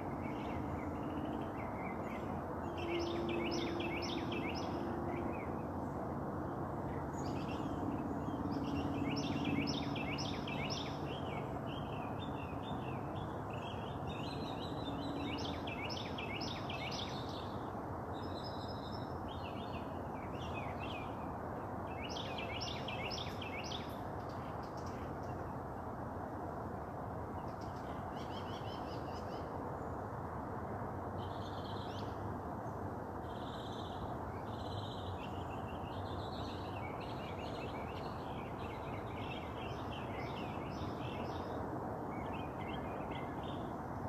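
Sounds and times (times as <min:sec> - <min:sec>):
songbird singing: 0:00.0 - 0:25.8, 0:27.3 - 0:30.0, 0:31.2 - 0:44.0
outdoor background noise: 0:00.0 - 0:44.0.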